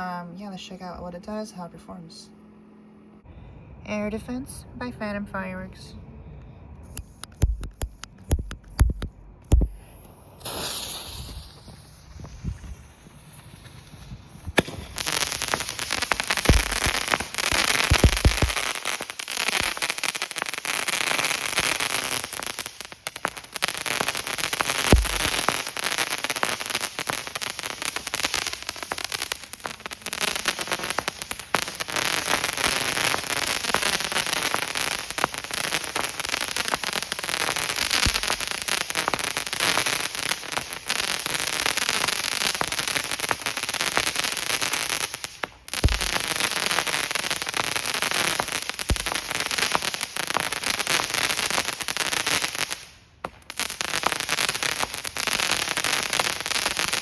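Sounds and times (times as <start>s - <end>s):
fireworks crackling: 6.8s - 57.0s
deep thump of firework tube: 7.4s - 9.8s, 24.9s - 25.3s, 45.8s - 46.2s.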